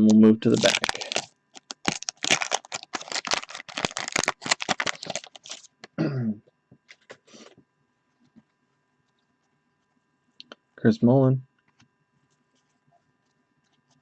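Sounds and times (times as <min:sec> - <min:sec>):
wrapper crinkling and rustling: 0:00.4 - 0:05.9.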